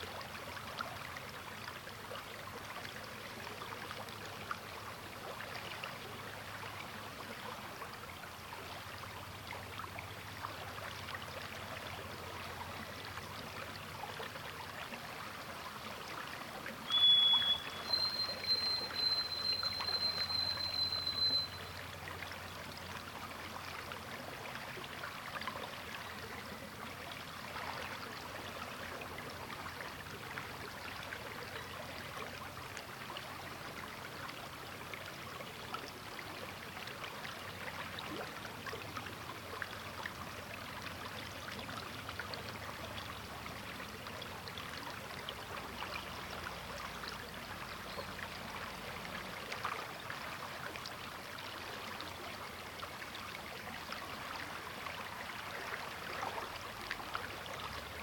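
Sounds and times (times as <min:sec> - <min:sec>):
river water flowing: 0:00.0 - 0:58.0
high thin whistle: 0:16.9 - 0:21.8.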